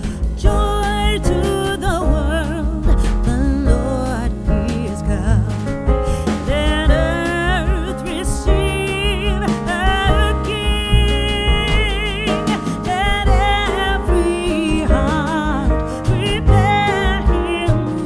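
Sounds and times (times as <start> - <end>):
song with singing and instruments: 0.0 - 18.0.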